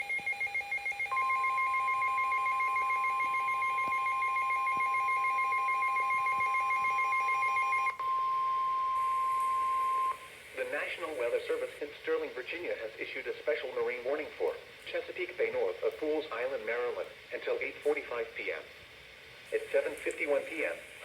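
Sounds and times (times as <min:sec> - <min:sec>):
steady warning alarm tone: 0:00.0 - 0:10.3.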